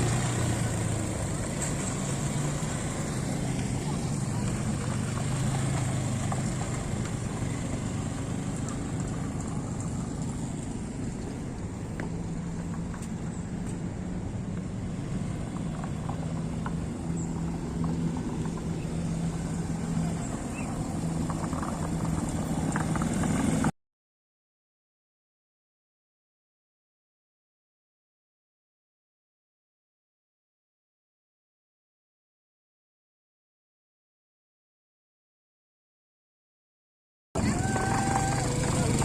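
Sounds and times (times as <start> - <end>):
atv engine running: 0.0 - 23.7, 37.4 - 39.0.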